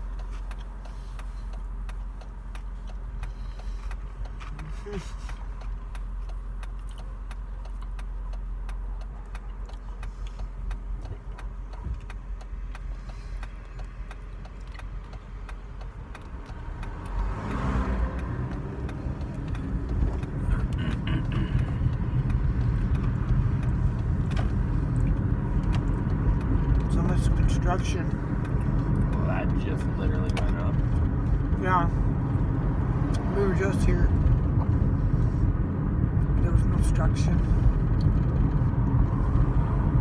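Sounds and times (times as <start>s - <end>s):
car road and engine noise: 0.0s - 40.0s.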